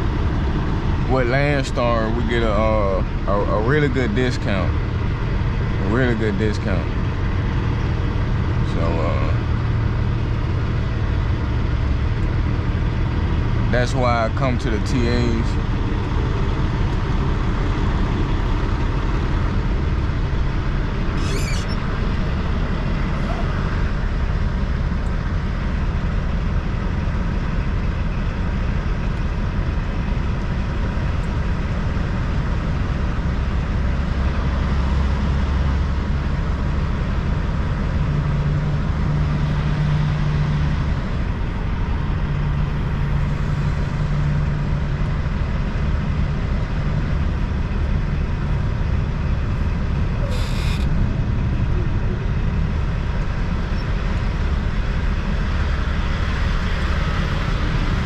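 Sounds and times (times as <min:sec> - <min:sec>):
diesel truck engine rumbling: 0:00.0 - 0:58.0
brief air hiss: 0:50.2 - 0:50.9.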